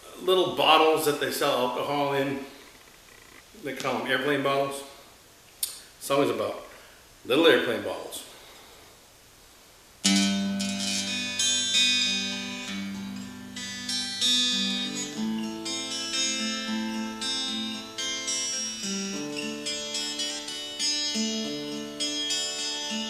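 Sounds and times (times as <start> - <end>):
fingerpicked guitar with reverb: 10.0 - 23.0.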